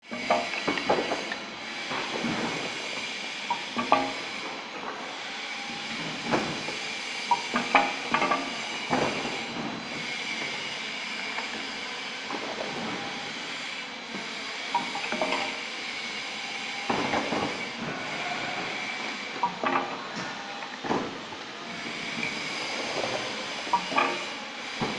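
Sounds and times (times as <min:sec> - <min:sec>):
filling machine hissing and humming: 0:00.0 - 0:24.9
machine clacks and knocks: 0:00.1 - 0:05.0, 0:05.8 - 0:10.5, 0:14.7 - 0:15.6, 0:16.9 - 0:24.9.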